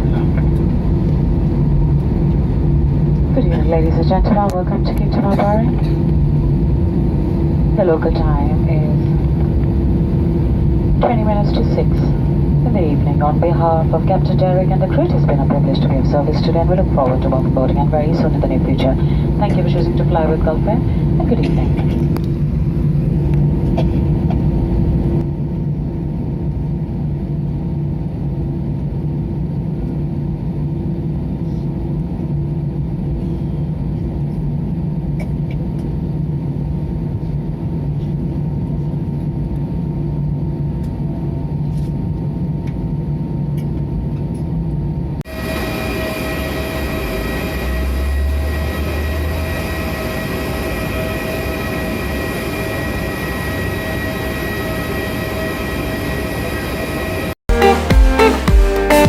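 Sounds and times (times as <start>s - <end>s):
airplane cabin engine drone: 0.0s - 59.0s
higher whining tones: 45.2s - 59.0s.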